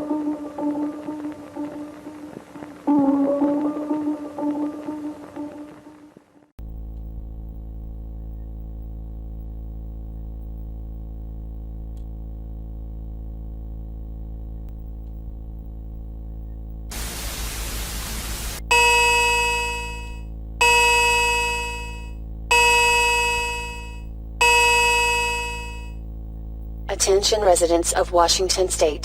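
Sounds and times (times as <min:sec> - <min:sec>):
low electrical buzz: 0:00.0 - 0:29.0
static hiss burst: 0:16.9 - 0:18.7
ringing alert tone: 0:18.7 - 0:26.0.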